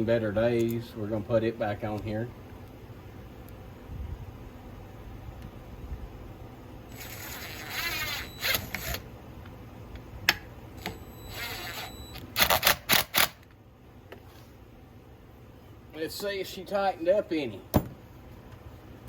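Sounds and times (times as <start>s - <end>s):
cordless screwdriver buzzing: 6.9s - 9.0s, 10.8s - 13.2s.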